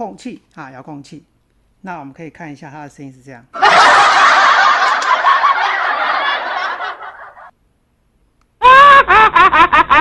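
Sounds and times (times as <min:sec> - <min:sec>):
canned crowd laughter: 0:03.6 - 0:07.5.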